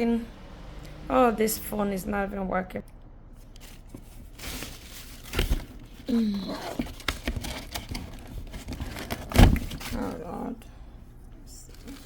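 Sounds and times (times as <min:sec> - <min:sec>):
packaging crinkling and tearing: 0:03.4 - 0:10.1.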